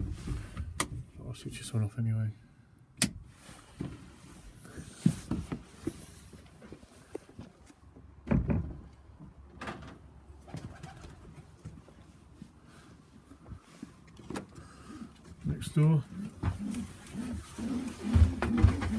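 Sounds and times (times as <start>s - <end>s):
wooden door knocks and thumps: 8.2s - 8.8s, 18.0s - 18.9s
pigeons stirring: 16.1s - 18.9s.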